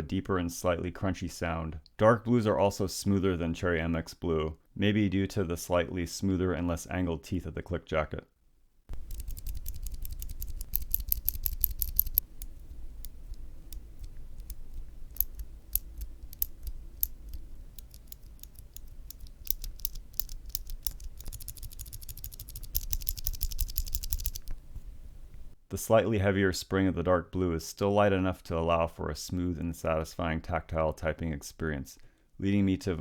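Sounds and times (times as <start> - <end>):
mechanical keyboard switches clicking: 8.9 - 24.5.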